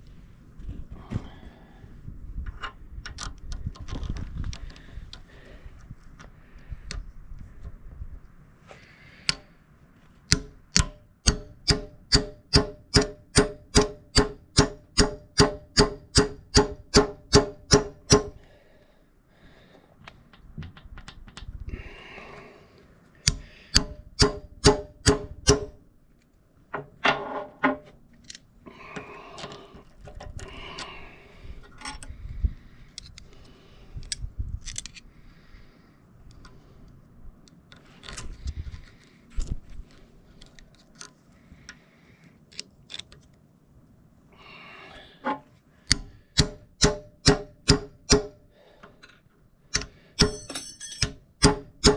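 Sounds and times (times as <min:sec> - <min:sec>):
hammer striking metal pin: 0:10.3 - 0:18.4, 0:23.3 - 0:25.8, 0:45.9 - 0:48.4, 0:49.7 - 0:51.9
knocks and clinks of handling: 0:50.2 - 0:51.2.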